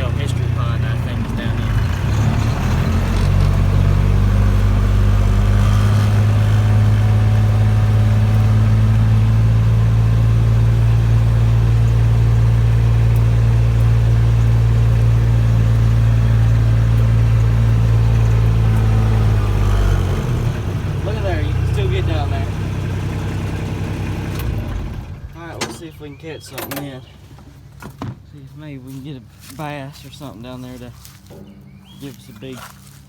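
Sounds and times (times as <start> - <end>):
vehicle engine humming: 0.0 - 33.0.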